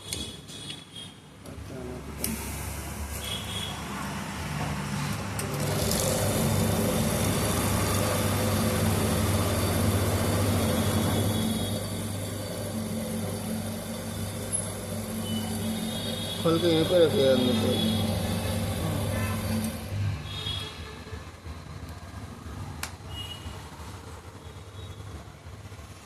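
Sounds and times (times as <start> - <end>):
motor hum: 5.4 - 20.6
noisy rumble: 5.6 - 20.4.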